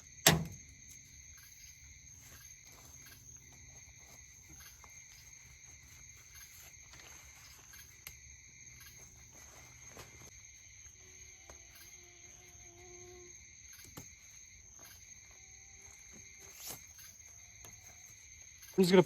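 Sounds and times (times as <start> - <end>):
night insects chorus: 0.0 - 19.0.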